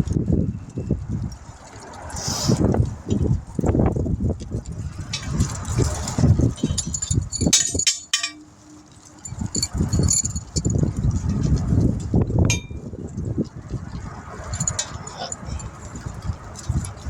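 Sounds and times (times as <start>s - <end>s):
metal tools clinking: 5.2s - 8.5s, 9.2s - 10.8s, 12.5s - 12.9s, 14.4s - 15.8s.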